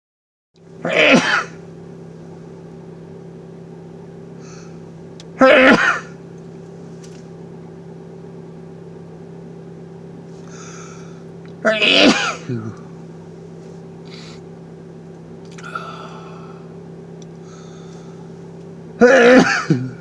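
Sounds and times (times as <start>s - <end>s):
steady low hum: 0.6s - 20.0s
man sneezing loudly: 0.8s - 1.6s, 5.4s - 6.1s, 11.6s - 12.8s, 19.0s - 20.0s.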